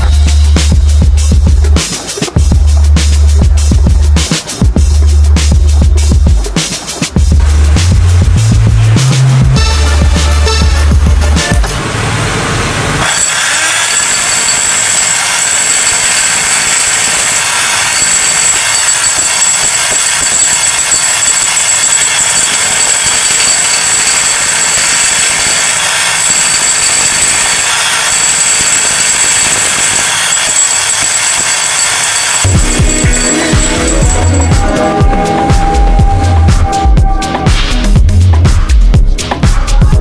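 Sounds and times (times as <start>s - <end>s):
demolition hammer breaking concrete: 7.3s - 34.7s.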